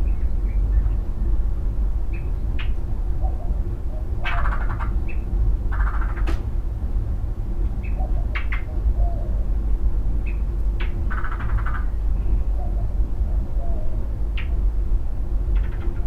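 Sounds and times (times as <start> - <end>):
steady low rumble: 0.0 - 16.0
animal chirps and raspy calls: 4.2 - 6.3, 10.3 - 12.0.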